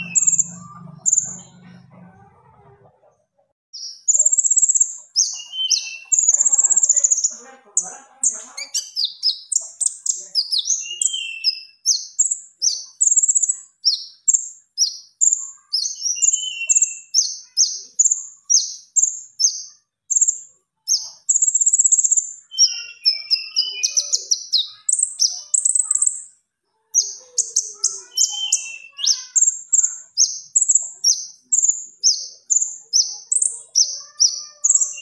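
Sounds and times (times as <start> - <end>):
songbird chirping and trilling: 0.0 - 35.0.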